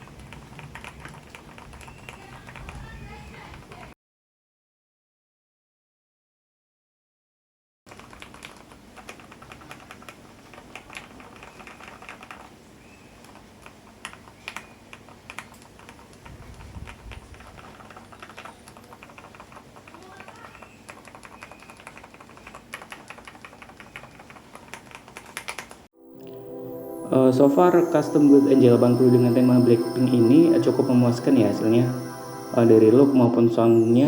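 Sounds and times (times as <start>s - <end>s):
mechanical keyboard typing: 0.0s - 3.8s, 7.9s - 12.5s, 13.2s - 25.8s.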